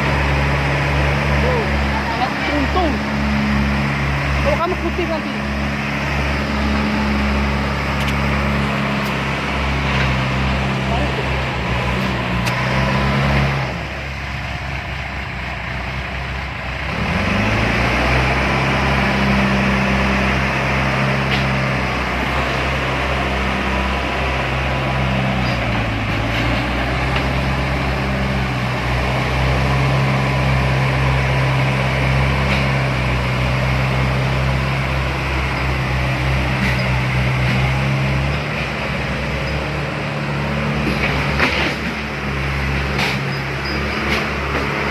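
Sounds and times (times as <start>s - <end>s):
heavy diesel engine running: 0.0s - 44.9s.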